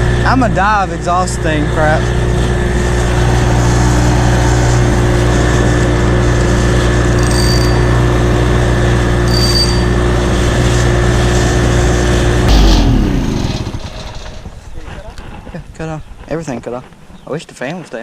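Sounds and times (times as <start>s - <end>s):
small boat engine running: 0.0s - 16.6s
engine stalling with thump: 12.5s - 14.7s.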